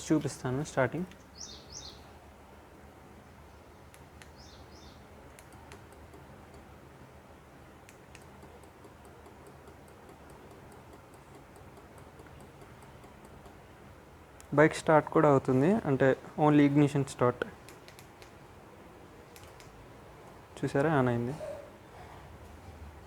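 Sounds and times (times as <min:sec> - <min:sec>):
faint high ticks and clicks: 0:03.9 - 0:04.5, 0:05.2 - 0:06.7, 0:07.8 - 0:13.7, 0:17.6 - 0:18.4, 0:19.3 - 0:19.8.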